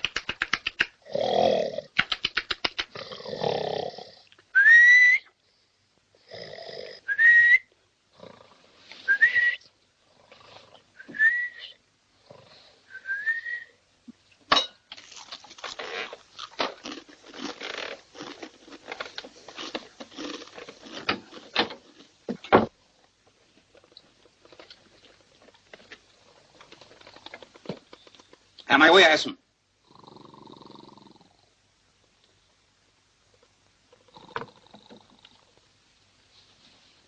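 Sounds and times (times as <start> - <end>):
comic snoring with whistle: 1.0 - 1.9, 2.9 - 4.2, 6.2 - 7.4, 29.8 - 31.5, 34.0 - 35.5
soft rustling: 35.8 - 37.0.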